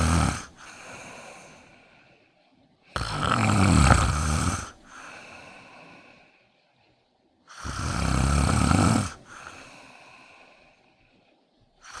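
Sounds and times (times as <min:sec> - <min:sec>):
cat snoring: 0:00.0 - 0:00.5, 0:03.0 - 0:04.8, 0:07.5 - 0:09.2
cat breathing softly: 0:00.0 - 0:02.6, 0:04.6 - 0:07.7, 0:09.2 - 0:12.0.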